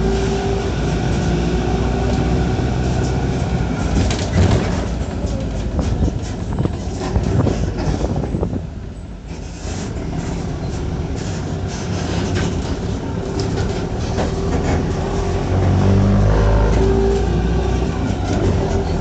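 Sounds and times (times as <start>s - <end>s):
bus diesel engine droning: 0.0s - 19.0s.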